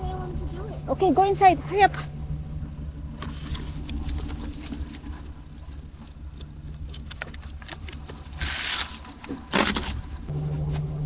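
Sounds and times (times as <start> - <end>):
vehicle engine idling: 0.0 - 11.0
crunching and scraping in snow: 3.2 - 11.0.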